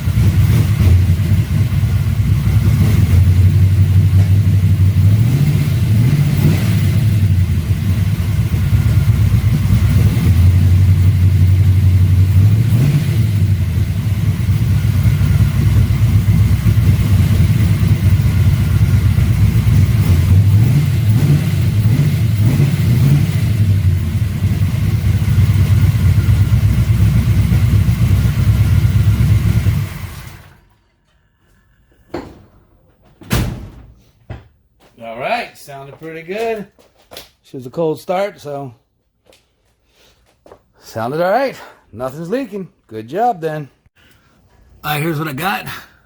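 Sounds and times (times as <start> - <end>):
car engine idling and revving: 0.0 - 30.8.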